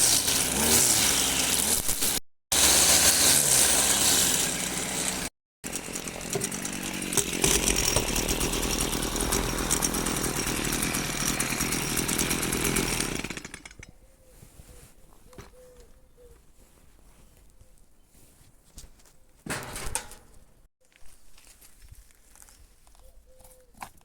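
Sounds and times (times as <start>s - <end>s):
string trimmer cutting grass: 0.0s - 13.8s.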